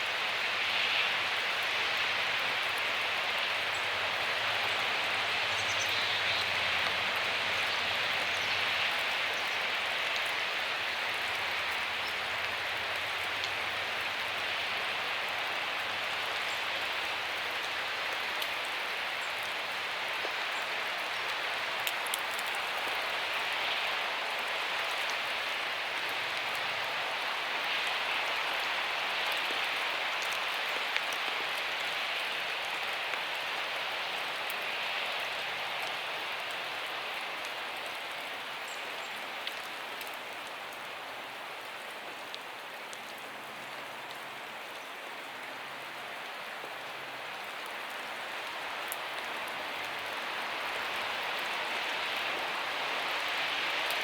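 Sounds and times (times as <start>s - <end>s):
steady rain falling: 0.0s - 54.0s
faint raindrop ticks: 1.2s - 54.0s.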